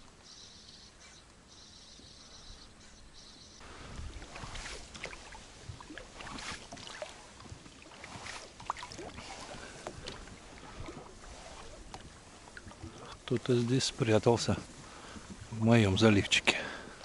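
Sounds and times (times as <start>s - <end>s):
low wind rumble: 0.0s - 17.0s
oars splashing in water: 3.6s - 17.0s.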